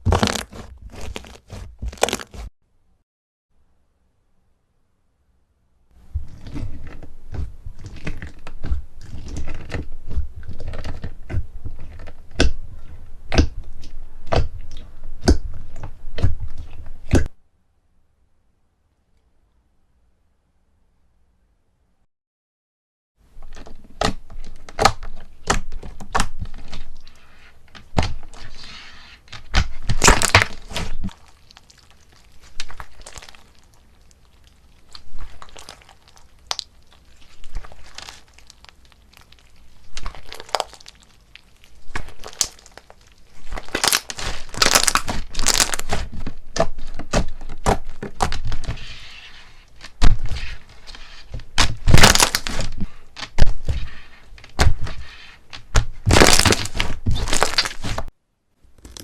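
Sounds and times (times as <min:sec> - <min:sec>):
crunchy slime crackling: 0:00.0 - 0:02.5, 0:29.5 - 0:49.0, 0:49.6 - 0:55.0, 0:55.8 - 0:58.1.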